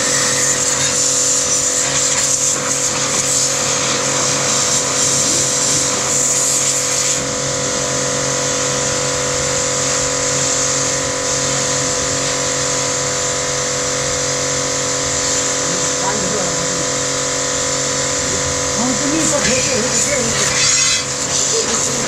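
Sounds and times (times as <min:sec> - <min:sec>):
pressure washer hiss: 0:00.0 - 0:22.0
pressure washer motor humming: 0:00.0 - 0:22.0.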